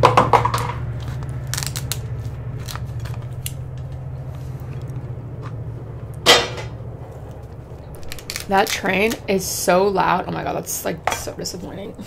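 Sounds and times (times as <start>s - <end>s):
train rumbling past: 0.0s - 12.0s
sharp clicks and crackles: 0.4s - 6.2s, 7.3s - 9.2s.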